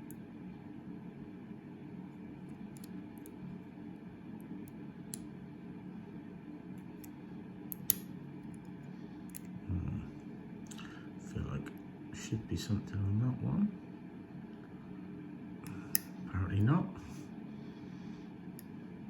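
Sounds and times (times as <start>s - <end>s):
low steady hum: 0.0s - 19.0s
lock pick clicking: 7.7s - 8.0s.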